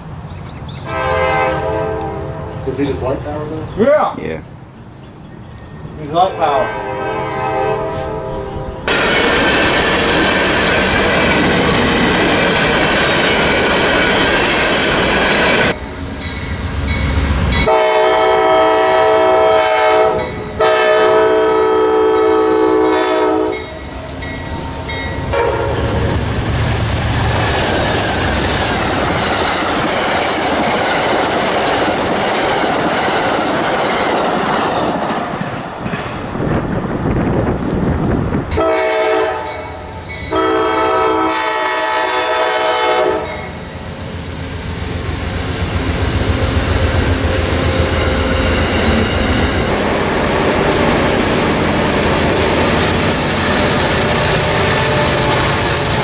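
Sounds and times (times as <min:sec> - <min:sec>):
locomotive air horn blasts: 0:00.8 - 0:02.7, 0:06.4 - 0:08.7, 0:17.6 - 0:23.8, 0:25.3 - 0:26.0, 0:38.6 - 0:43.5
train wheels clattering over rails: 0:08.9 - 0:15.8, 0:25.9 - 0:38.6, 0:46.3 - 0:56.0.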